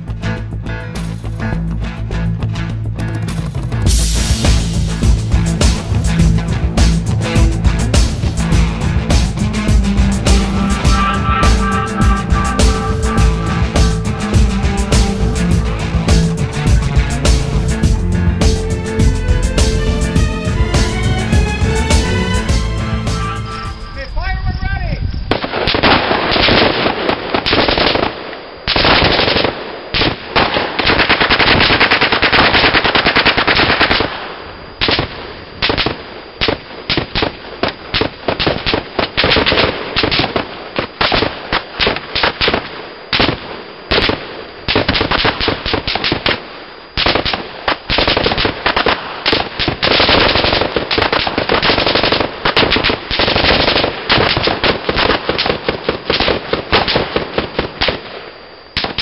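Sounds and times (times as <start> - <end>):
machine guns firing: 47.0 - 58.0.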